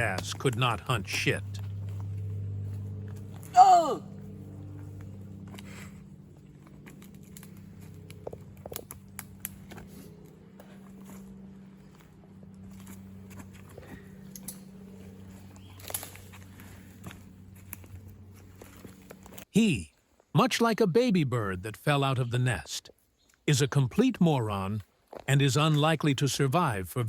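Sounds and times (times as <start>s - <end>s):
steady low hum: 0.0s - 19.5s
plants crunching and rustling: 4.2s - 19.5s.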